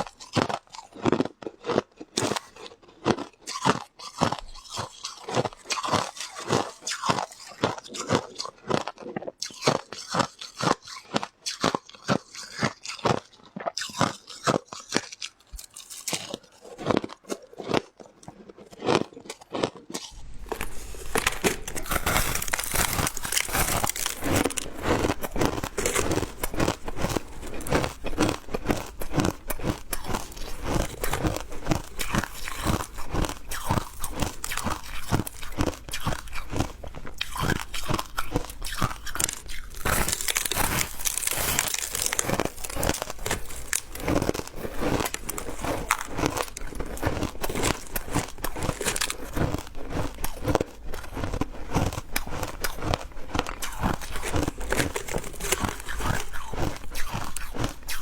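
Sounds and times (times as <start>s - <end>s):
ice crunching while chewed: 0.0s - 58.0s.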